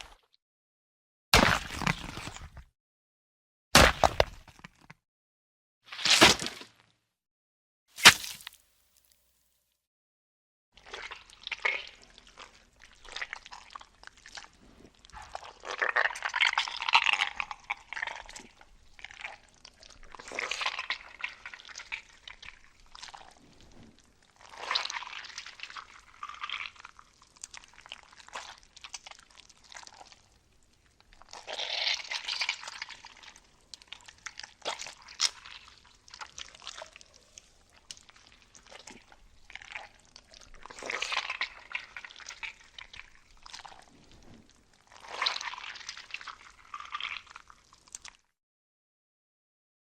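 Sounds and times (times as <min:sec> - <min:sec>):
wet cartoon gore effects: 0:08.0 - 0:08.6, 0:10.8 - 0:48.3.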